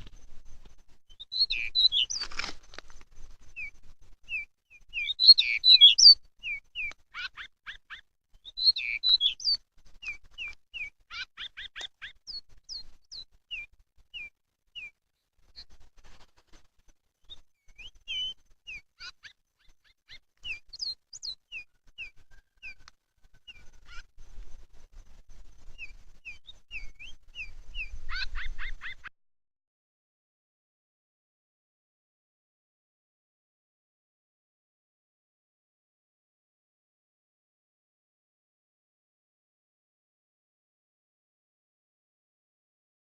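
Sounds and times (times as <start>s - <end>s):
bird chirping calls: 0.0s - 15.8s, 17.2s - 24.4s, 25.4s - 29.1s.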